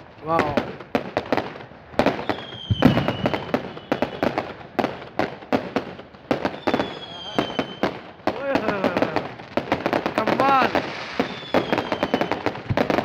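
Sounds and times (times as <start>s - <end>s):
firework bangs and crackles: 0.0s - 13.0s
high falling firework whistle: 2.2s - 4.4s, 6.5s - 8.0s, 10.8s - 12.8s.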